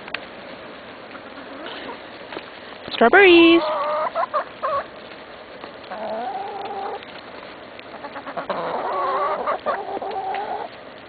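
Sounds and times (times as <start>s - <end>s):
hens making whining calls: 1.0s - 2.2s, 3.5s - 5.0s, 5.8s - 10.8s.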